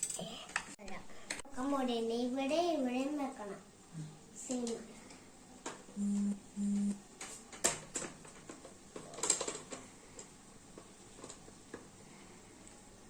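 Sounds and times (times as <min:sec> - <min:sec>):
short low humming tones: 0:06.0 - 0:07.0.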